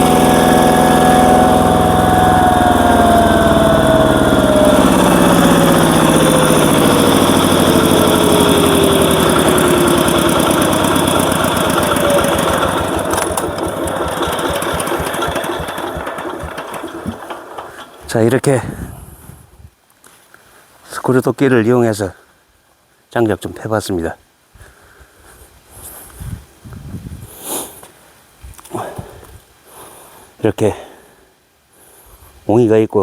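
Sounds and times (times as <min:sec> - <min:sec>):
engine winding down: 0:00.0 - 0:18.4.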